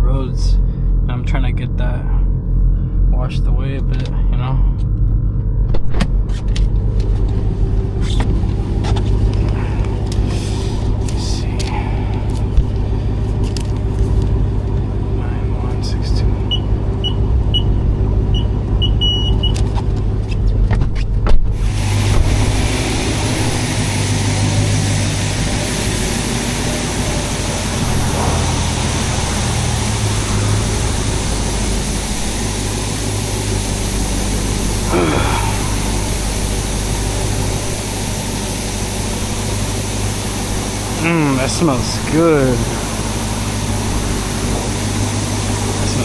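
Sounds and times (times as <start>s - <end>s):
car engine idling hum: 0.0s - 46.0s
water jets spraying car: 8.0s - 16.4s, 21.6s - 46.0s
keypad beeps: 18.4s - 19.6s.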